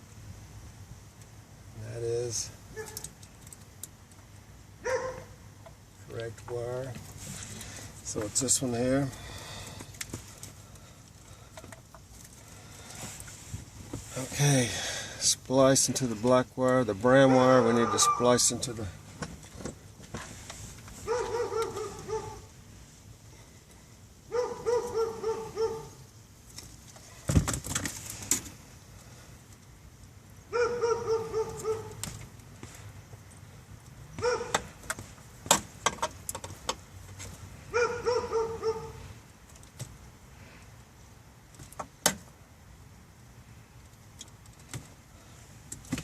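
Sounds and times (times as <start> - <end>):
dog barking: 4.8 - 5.4, 17.2 - 18.4, 21.0 - 22.5, 24.3 - 26.0, 30.5 - 31.9, 34.2 - 34.6, 37.7 - 39.0.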